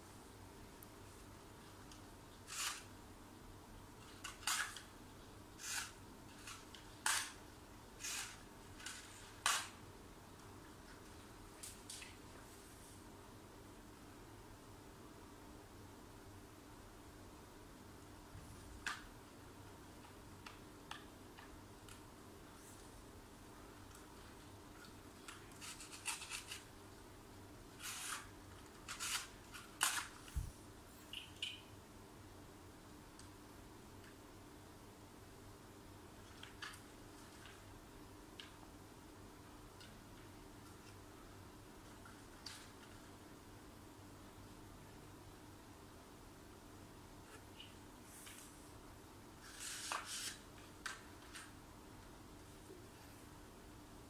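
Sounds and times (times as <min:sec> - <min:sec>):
paper rustling and scraping: 0:27.8 - 0:30.4, 0:49.4 - 0:51.5
paper rustling and clicking: 0:49.5 - 0:51.5.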